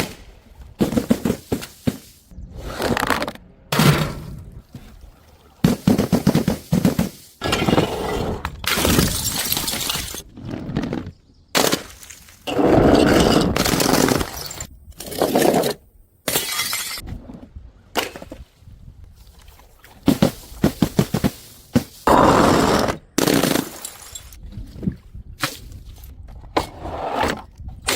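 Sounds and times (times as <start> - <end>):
glass bottles smashing: 8.7 - 10.2, 23.3 - 24.4.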